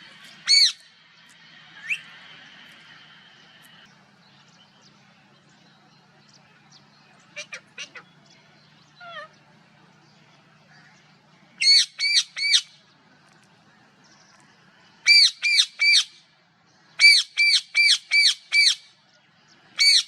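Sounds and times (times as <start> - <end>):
parrot calling: 0.4 - 0.9, 7.3 - 8.1, 9.0 - 9.4, 11.6 - 12.7, 15.0 - 16.2, 17.0 - 18.8, 19.8 - 20.0.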